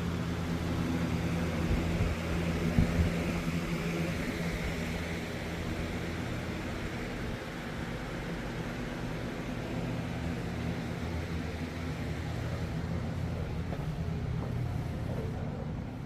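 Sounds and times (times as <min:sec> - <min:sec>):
electric fans humming: 0:00.0 - 0:16.0.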